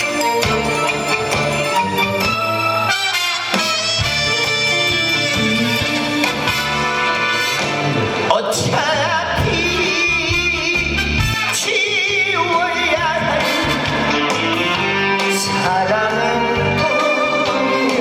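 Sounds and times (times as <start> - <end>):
man singing with vibrato: 0.0 - 3.0, 8.1 - 18.0
band playing: 0.0 - 18.0.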